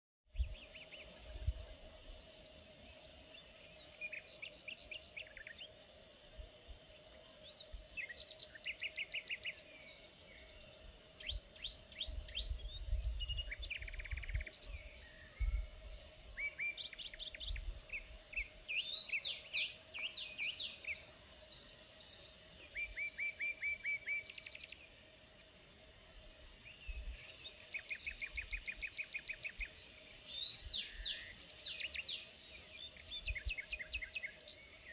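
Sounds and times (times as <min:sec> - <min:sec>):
songbirds singing: 0:00.3 - 0:34.9
wind rumble: 0:12.1 - 0:16.3.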